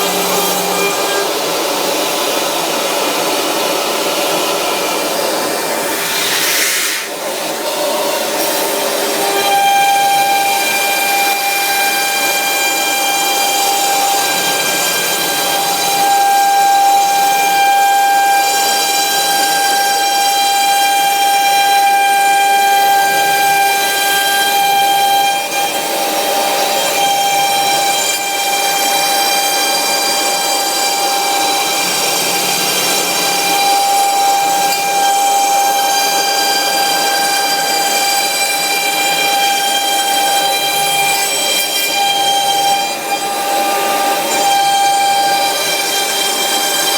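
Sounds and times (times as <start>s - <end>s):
router spindle whining while cutting: 0.0s - 46.9s.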